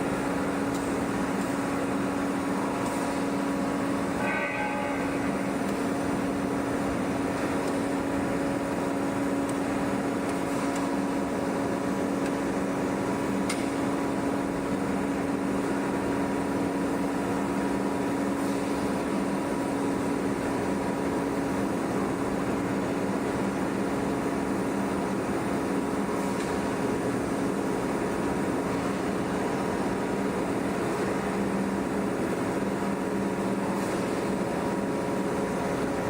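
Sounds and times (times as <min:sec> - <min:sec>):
heavy machinery humming: 0:00.0 - 0:23.4.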